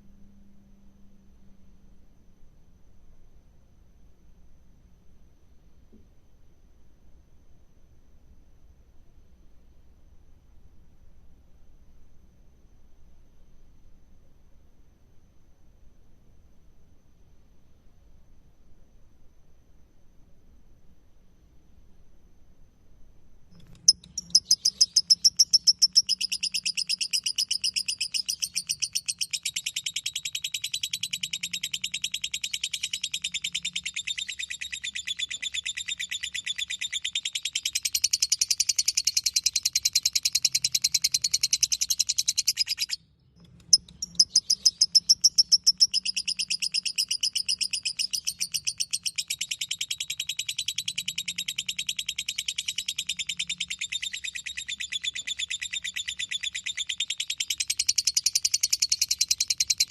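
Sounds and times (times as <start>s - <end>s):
lovebird chattering trill: 23.6s - 59.9s.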